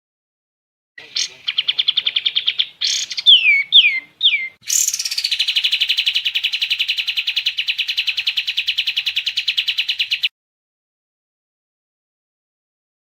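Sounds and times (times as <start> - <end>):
songbird whistles and trill: 1.0 - 10.3.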